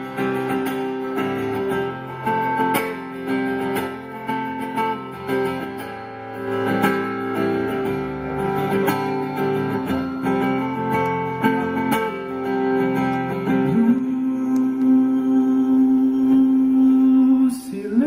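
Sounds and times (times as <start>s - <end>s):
acoustic guitar playing: 0.0s - 18.0s.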